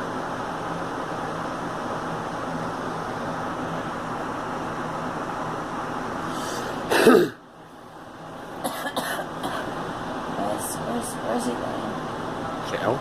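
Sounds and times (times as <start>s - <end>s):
background hum: 0.0s - 13.0s
girl coughing: 6.9s - 7.4s, 8.6s - 9.7s.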